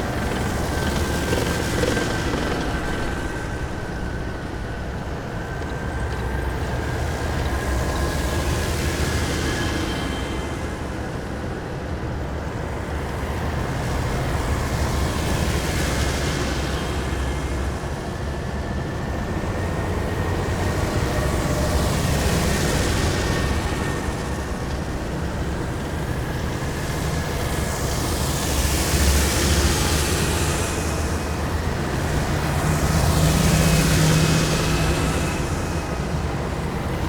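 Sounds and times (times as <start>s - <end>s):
road noise rushing: 0.0s - 8.4s, 20.7s - 37.0s.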